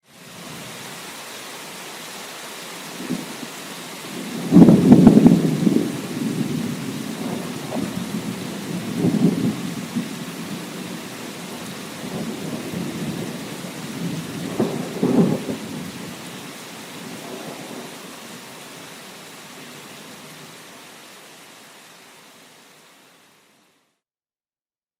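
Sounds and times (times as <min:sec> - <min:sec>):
steady rain: 0:00.0 - 0:24.0
thunder rumbling: 0:03.0 - 0:03.5, 0:04.1 - 0:18.0.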